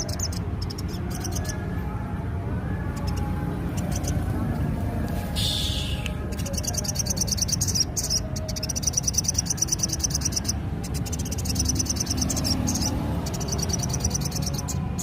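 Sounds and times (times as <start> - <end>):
bush cricket buzzing call: 5.4 - 14.6.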